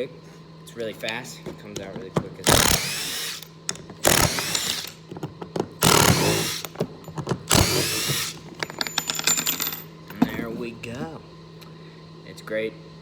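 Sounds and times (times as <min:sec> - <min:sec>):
impact driver hammering screws: 0:02.4 - 0:06.8, 0:07.4 - 0:08.4.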